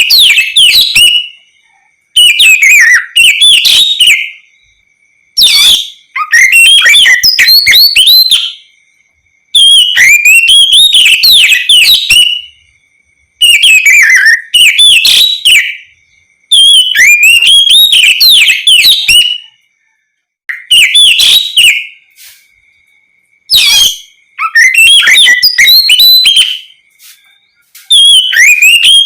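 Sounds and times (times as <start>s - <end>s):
magpie-robin singing: 0.0s - 1.5s, 2.2s - 4.5s, 5.4s - 8.7s, 9.6s - 12.6s, 13.4s - 15.9s, 16.5s - 19.6s, 20.5s - 22.4s, 23.5s - 29.0s.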